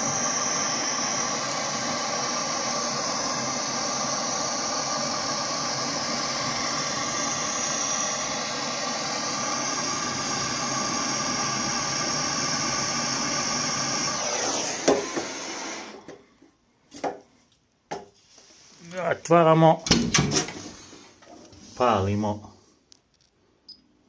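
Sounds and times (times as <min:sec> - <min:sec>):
stove fan whirring hum: 0:00.0 - 0:16.5.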